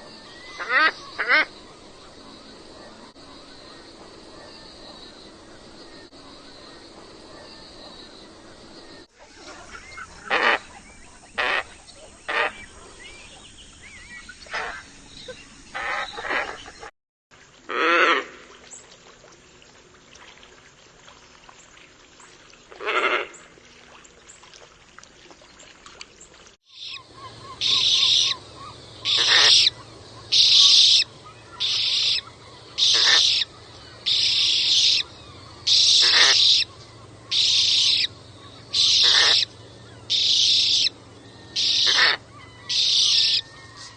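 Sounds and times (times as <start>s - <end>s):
ibis harsh calls: 26.7s - 43.9s.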